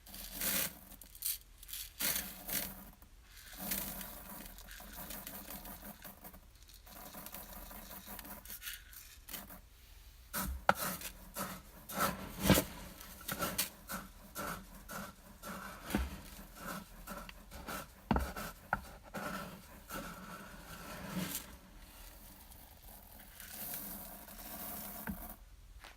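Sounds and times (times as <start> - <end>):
dry rice grains rustling: 0.0 - 25.4.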